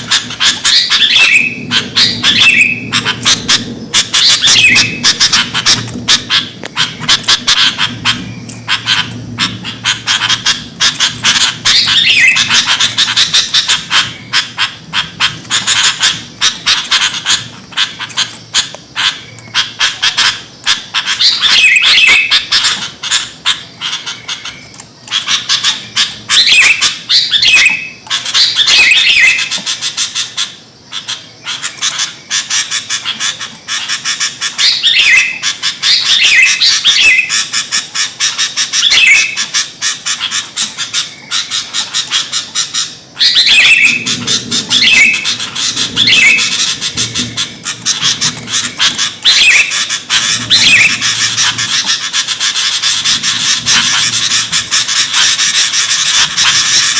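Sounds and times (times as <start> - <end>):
bulbuls chattering: 0.0 - 56.9.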